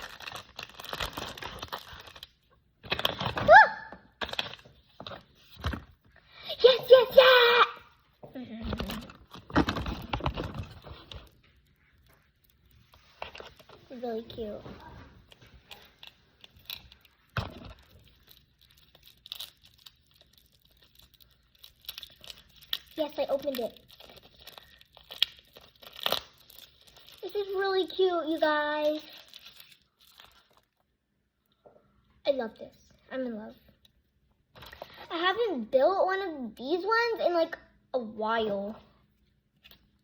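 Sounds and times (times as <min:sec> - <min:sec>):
plastic packaging rustling: 0:00.0 - 0:03.5, 0:08.5 - 0:30.8.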